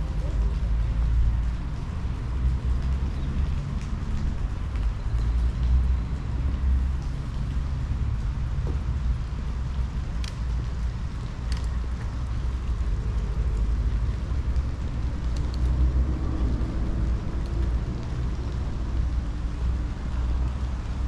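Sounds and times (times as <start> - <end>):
distant city traffic rumble: 0.0 - 21.0.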